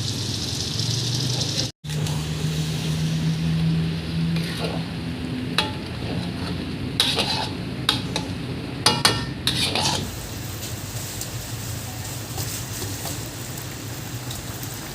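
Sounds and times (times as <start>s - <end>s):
metal spoon stirring in metal pot: 4.3s - 4.9s, 5.5s - 10.1s.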